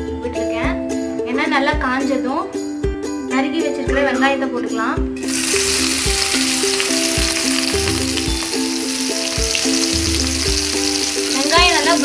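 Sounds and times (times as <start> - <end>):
background music with a beat: 0.0 - 12.0
onions sizzling in hot oil: 5.2 - 12.0.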